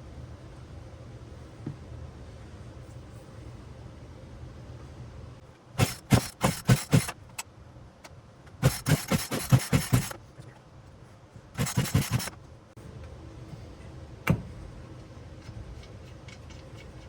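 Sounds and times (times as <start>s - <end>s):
chainsaw pull-start cranking: 5.8s - 7.2s, 8.6s - 10.2s, 11.6s - 12.4s.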